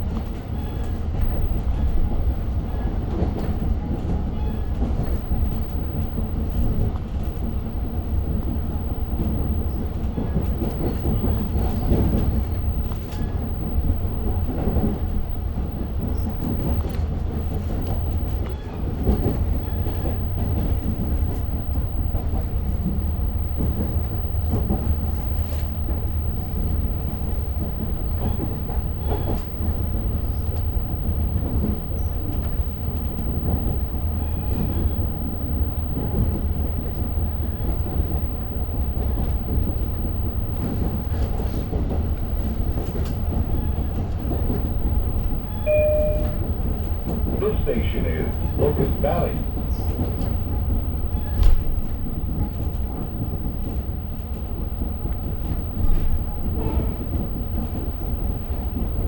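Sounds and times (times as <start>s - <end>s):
train low rumble: 0.0s - 59.0s.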